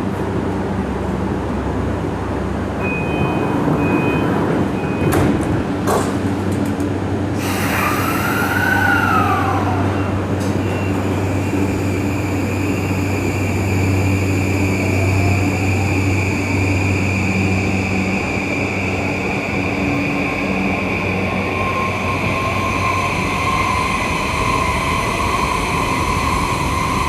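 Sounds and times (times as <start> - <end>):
short beeps: 2.8 - 5.2, 10.6 - 11.0
train motor whine: 7.4 - 27.0.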